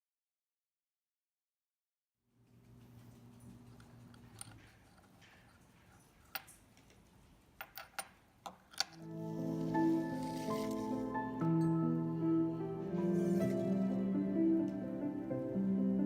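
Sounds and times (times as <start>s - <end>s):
background music with sustained notes: 8.9s - 16.0s.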